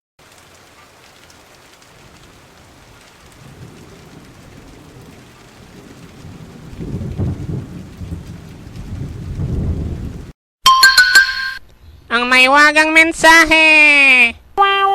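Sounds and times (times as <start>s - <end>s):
rain hissing: 0.2s - 10.3s
low rumble of thunder: 1.9s - 10.3s.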